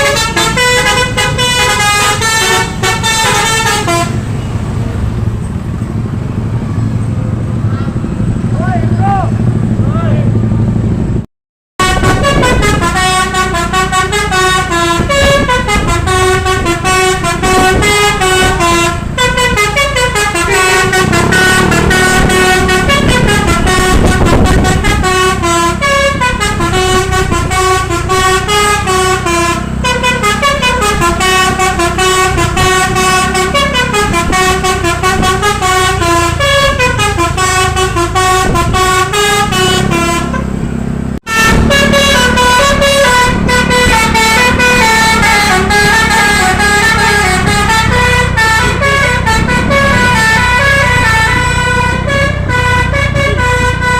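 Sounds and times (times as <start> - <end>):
musical air horn playing a tune: 0.0 - 4.3, 11.8 - 40.5, 41.2 - 53.9
bus engine rumble: 0.0 - 53.9.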